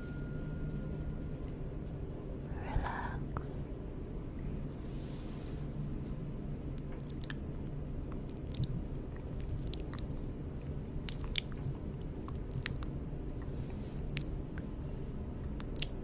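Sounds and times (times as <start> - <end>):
lip and tongue clicks: 6.8 - 7.5, 8.1 - 10.1, 11.0 - 14.7, 15.5 - 16.0.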